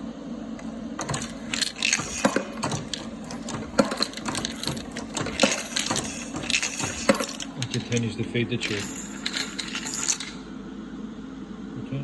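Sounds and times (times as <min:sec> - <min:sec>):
brass cases clinking in metal tube: 0:00.6 - 0:10.4.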